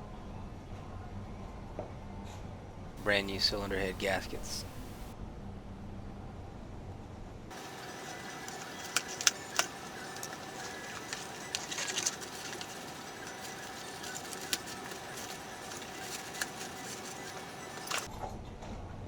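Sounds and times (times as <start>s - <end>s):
background hiss and hum: 3.0s - 5.2s, 7.5s - 18.1s.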